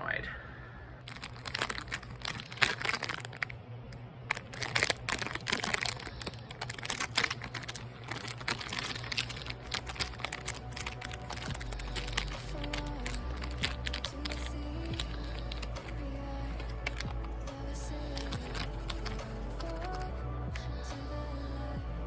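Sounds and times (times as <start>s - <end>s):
low steady hum: 0.0s - 22.0s
small objects clicking and rustling: 1.1s - 3.5s, 4.3s - 20.2s.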